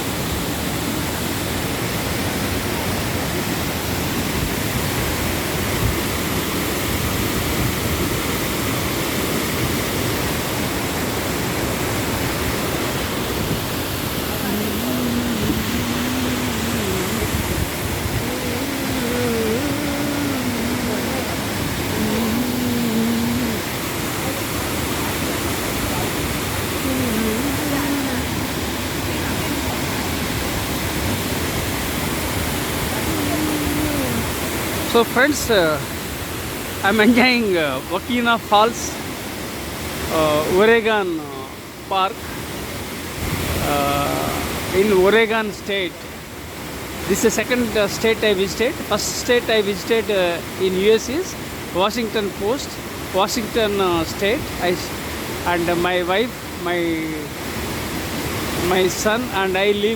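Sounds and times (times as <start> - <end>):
waterfall rushing: 0.0 - 59.9
faint voice: 14.3 - 17.6, 18.2 - 24.5, 26.8 - 28.5, 32.9 - 35.8, 36.8 - 37.8, 40.1 - 41.5, 43.6 - 44.5.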